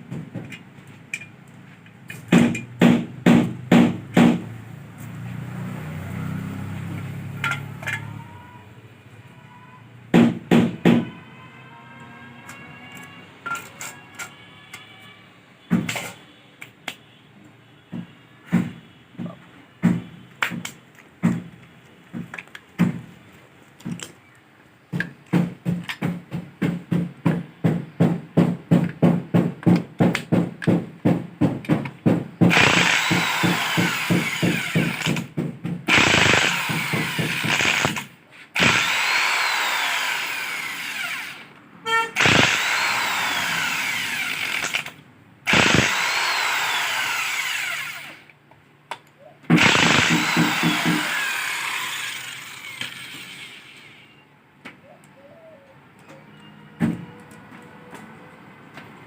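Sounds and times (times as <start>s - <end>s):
power tool running: 32.4s - 35.3s, 35.9s - 41.5s, 42.2s - 48.3s, 49.5s - 54.2s.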